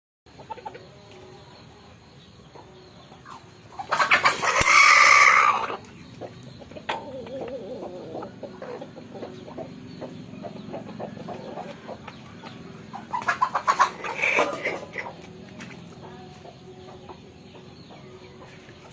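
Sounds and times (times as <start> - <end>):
chicken clucking: 0.3 - 18.9
rapid chicken calls: 2.4 - 18.9
rooster crowing: 4.5 - 5.8.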